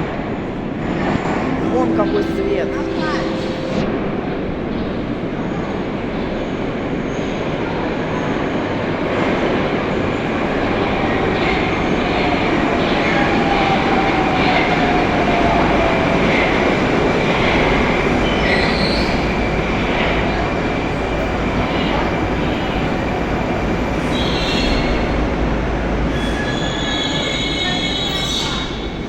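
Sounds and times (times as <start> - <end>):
train rumbling through station: 0.0 - 29.0
high steady tone: 1.5 - 5.6.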